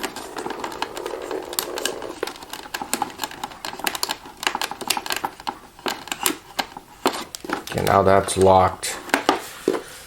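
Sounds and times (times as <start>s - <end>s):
plastic lamp holder clicks and rattles: 2.3s - 9.3s.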